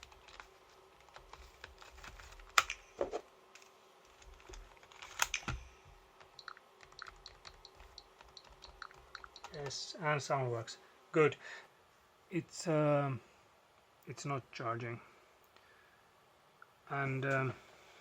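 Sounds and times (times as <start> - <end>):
faint steady hum: 0.0 - 18.0
fingertips tapping on touchscreen: 4.2 - 9.7.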